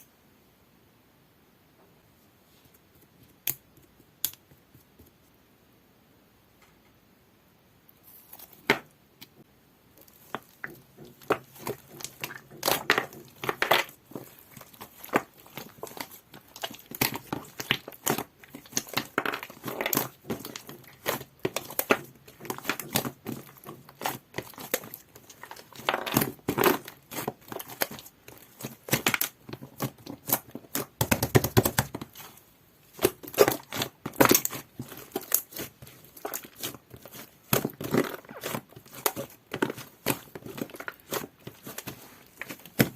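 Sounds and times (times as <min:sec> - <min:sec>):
slime squishing and crackling: 0:10.0 - 0:42.9.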